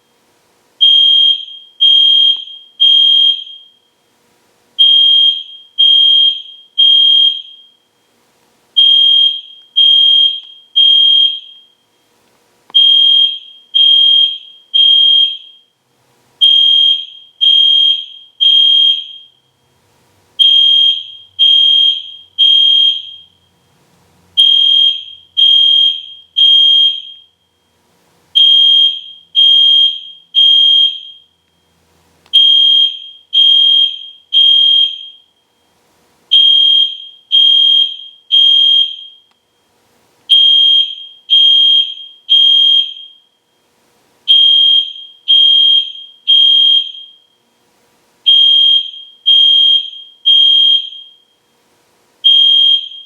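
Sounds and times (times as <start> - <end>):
fire alarm horn beeping: 0.8 - 4.0, 4.8 - 7.9, 8.8 - 12.0, 12.8 - 15.8, 16.4 - 19.4, 20.4 - 23.6, 24.4 - 27.7, 28.4 - 31.6, 32.3 - 35.6, 36.3 - 39.7, 40.3 - 43.6, 44.3 - 47.4, 48.2 - 51.5, 52.2 - 53.0.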